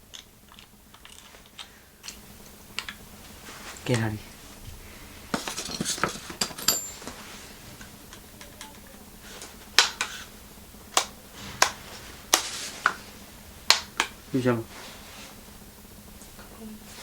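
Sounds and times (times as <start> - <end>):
small hard objects clicking: 0.0 - 3.0.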